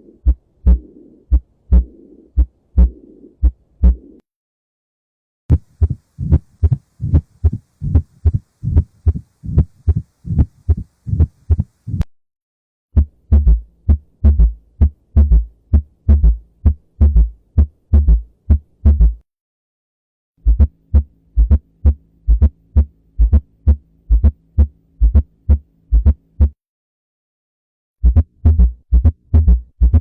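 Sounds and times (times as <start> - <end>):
rapid low heartbeats: 0.2 - 4.1, 5.5 - 12.1, 13.0 - 19.2, 20.4 - 26.6, 28.0 - 30.0
steady low hum: 5.5 - 12.1, 20.4 - 26.5.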